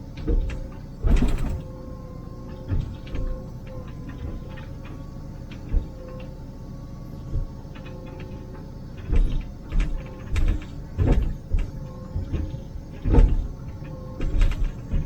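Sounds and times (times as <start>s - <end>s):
diesel engine and hydraulic whine: 0.0s - 15.0s
heavy clunks and knocks: 0.1s - 6.5s, 7.2s - 15.0s.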